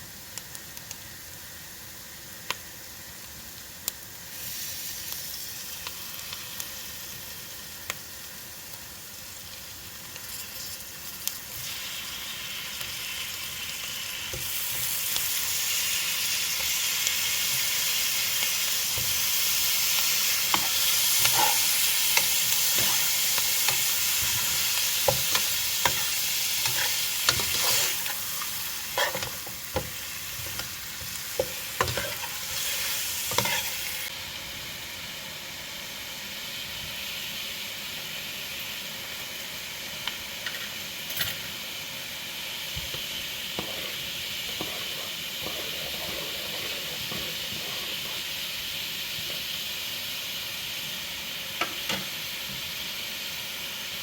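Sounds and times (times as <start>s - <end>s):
food sizzling in a pot: 0.0s - 54.0s
utensil scraping a pot: 20.5s - 33.8s.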